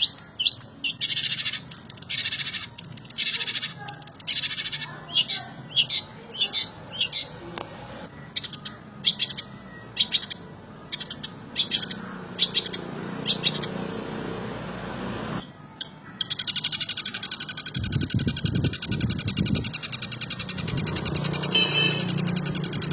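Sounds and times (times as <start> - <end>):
shrike chirps and trill: 0.0 - 7.4, 8.1 - 14.4, 15.4 - 22.9.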